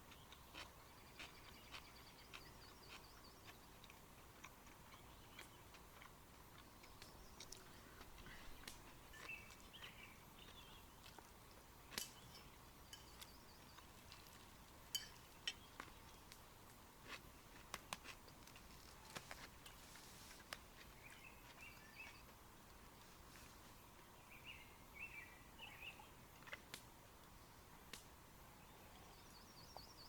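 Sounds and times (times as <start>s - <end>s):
faint bird chirps: 24.0s - 26.3s.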